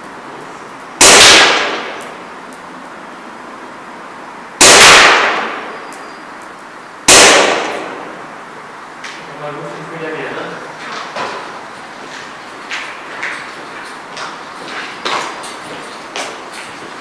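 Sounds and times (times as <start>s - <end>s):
airsoft pistol shots echoing: 1.0s - 2.0s, 4.6s - 5.8s, 7.1s - 8.2s.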